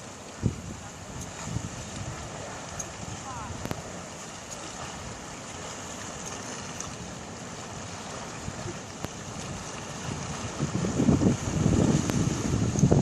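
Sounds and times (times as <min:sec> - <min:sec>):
wind on microphone: 0:00.0 - 0:03.9, 0:08.1 - 0:13.0
ocean surf: 0:00.0 - 0:13.0.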